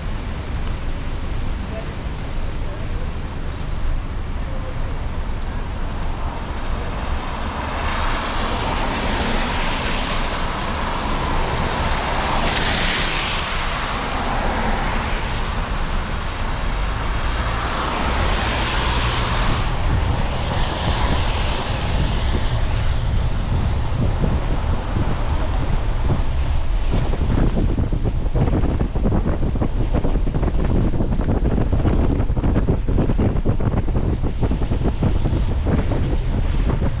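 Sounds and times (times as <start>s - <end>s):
car road rumble: 0.0s - 37.0s
tyre hiss on wet pavement: 5.5s - 20.0s.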